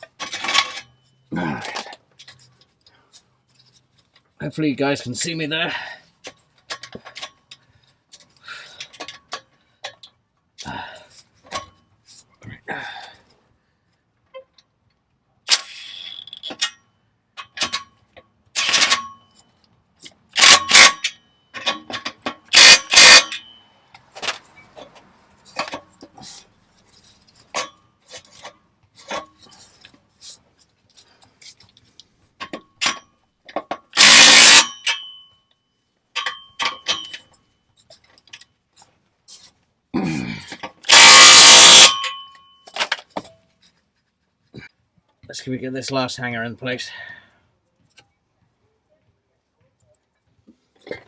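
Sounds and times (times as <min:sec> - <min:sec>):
loud burst of noise: 0:22.6 - 0:23.4, 0:34.0 - 0:34.7, 0:40.9 - 0:42.0.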